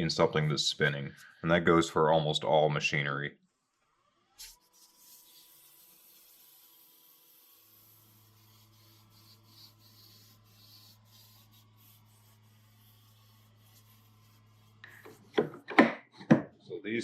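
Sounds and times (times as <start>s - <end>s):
light rubbing: 4.4s - 15.7s
sharp wooden knocks: 15.4s - 16.6s.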